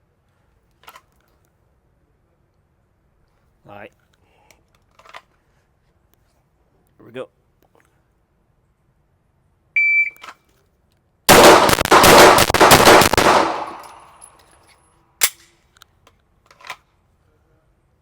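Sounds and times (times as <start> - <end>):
shot timer beep: 9.8 - 10.2
rapid pistol shots: 11.3 - 14.1.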